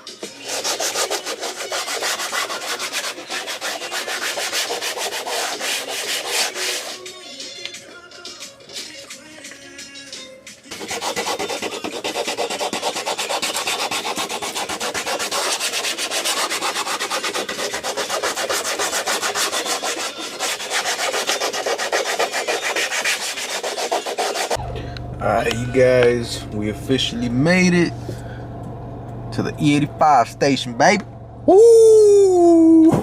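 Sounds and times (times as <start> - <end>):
sandpaper rasping on bumper: 0.3 - 7.1, 10.7 - 24.6.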